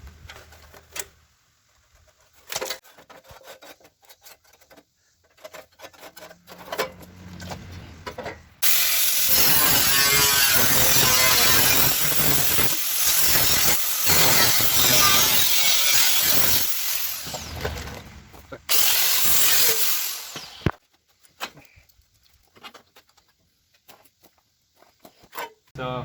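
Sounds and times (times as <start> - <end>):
scratching on sheet metal: 2.0 - 18.0
power cutting tool whirring: 8.6 - 18.0, 18.7 - 20.8.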